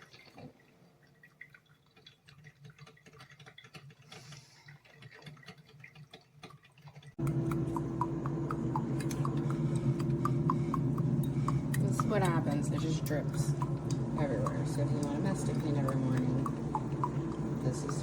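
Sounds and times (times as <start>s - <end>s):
coffee drips plinking: 4.6s - 18.0s
steady hum: 7.2s - 18.0s.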